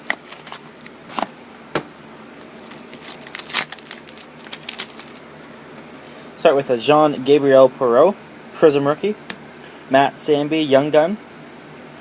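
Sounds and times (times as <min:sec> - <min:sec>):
card wrapper crinkling: 0:00.0 - 0:01.3, 0:02.4 - 0:05.2.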